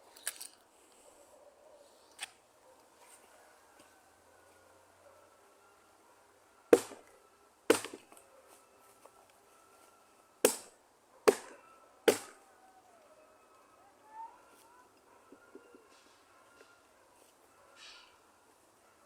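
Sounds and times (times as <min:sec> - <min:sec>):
wood being chopped: 0:06.7 - 0:08.2, 0:10.4 - 0:12.4.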